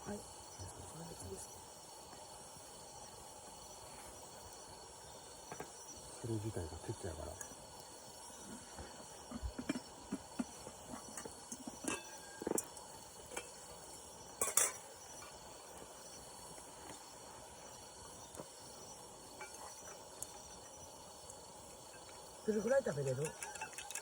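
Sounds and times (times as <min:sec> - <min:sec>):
utensils clinking against dishes: 0:23.2 - 0:24.0.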